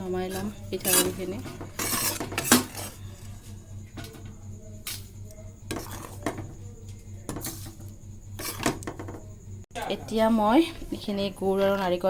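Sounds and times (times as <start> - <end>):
metal utensil scraping a pan: 0.2 - 3.4, 5.7 - 6.4.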